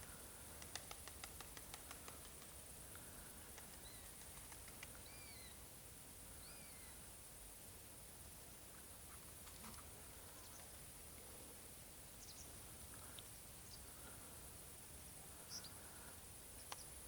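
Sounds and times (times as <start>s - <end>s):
steady high hiss: 0.0s - 17.0s
faint bird chirps: 3.6s - 5.7s, 6.3s - 7.1s, 9.0s - 11.4s, 12.1s - 14.1s, 15.2s - 17.0s.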